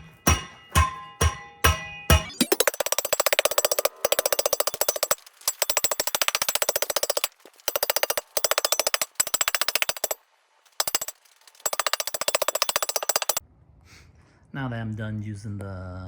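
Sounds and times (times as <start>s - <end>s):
hand tamper pounding soil: 2.3s - 13.4s.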